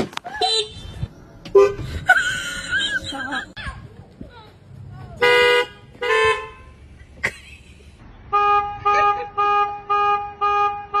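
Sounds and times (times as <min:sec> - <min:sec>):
car horn honking: 0:00.3 - 0:01.9, 0:05.2 - 0:06.8, 0:08.3 - 0:11.0.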